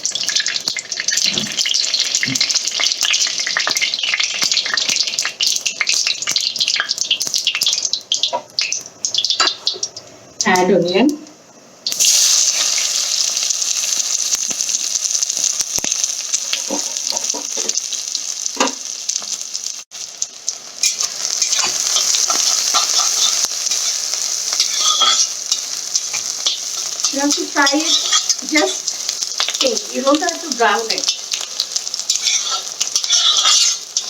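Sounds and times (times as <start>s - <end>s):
onion sizzling in hot oil: 0.0s - 34.0s
spoon scraping and knocking pan: 16.5s - 17.8s, 18.6s - 19.4s, 20.8s - 29.5s, 32.0s - 34.0s.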